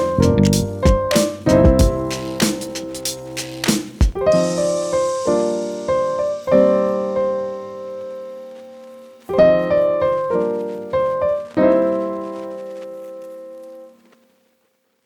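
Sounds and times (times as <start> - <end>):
piano chords ringing: 0.0 - 14.0.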